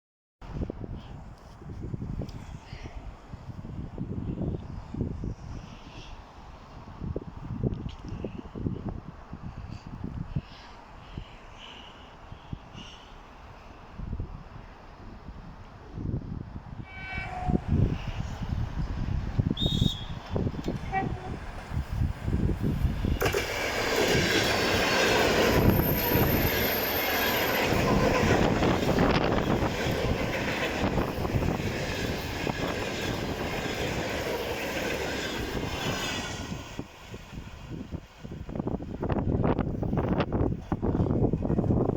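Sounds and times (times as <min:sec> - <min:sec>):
train horn: 0:16.8 - 0:18.2, 0:19.6 - 0:21.6, 0:27.7 - 0:29.2
train wheels rumbling past: 0:16.9 - 0:41.9.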